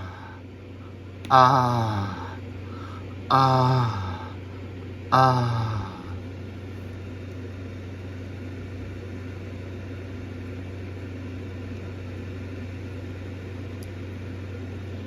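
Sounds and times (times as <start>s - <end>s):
steady low hum: 0.0s - 15.0s
person speaking: 1.3s - 2.4s, 3.3s - 4.3s, 5.2s - 6.2s.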